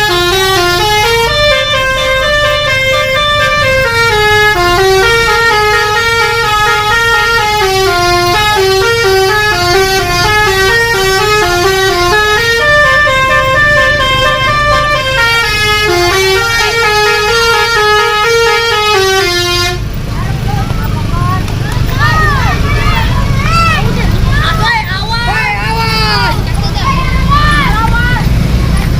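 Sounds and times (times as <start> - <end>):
musical air horn playing tune: 0.0 - 19.9.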